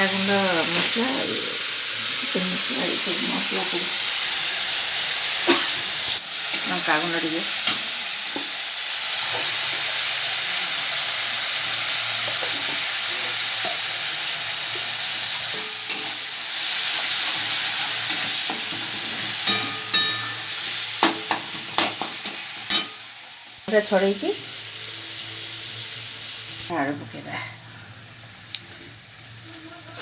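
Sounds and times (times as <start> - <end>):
food sizzling in a pan: 0.0 - 30.0
spoon clinking against pan: 15.5 - 16.2, 19.3 - 23.1.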